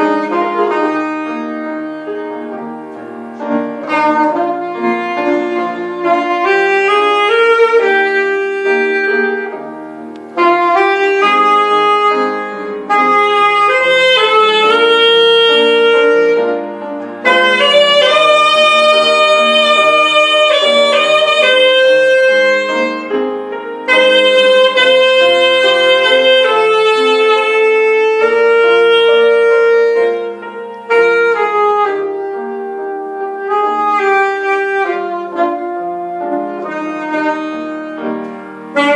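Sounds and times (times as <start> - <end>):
piano accompaniment: 0.0 - 38.9
saxophone melody: 0.0 - 38.9.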